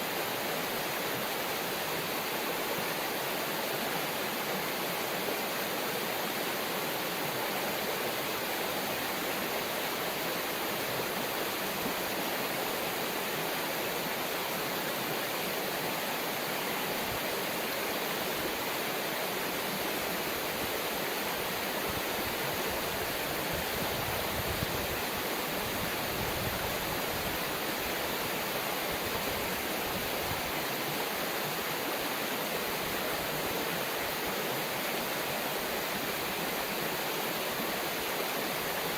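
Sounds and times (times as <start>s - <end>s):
river water running: 0.0s - 38.9s.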